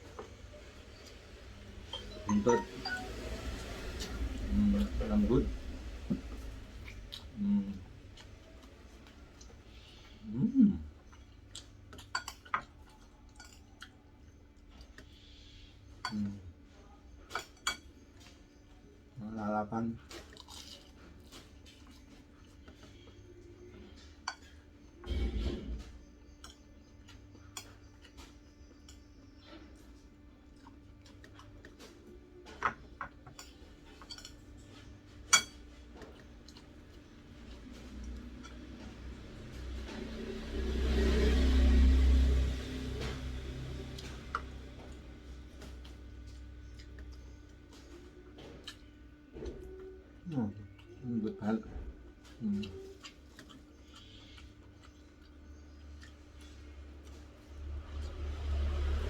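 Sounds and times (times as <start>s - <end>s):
person humming while chewing: 52.1s - 54.8s.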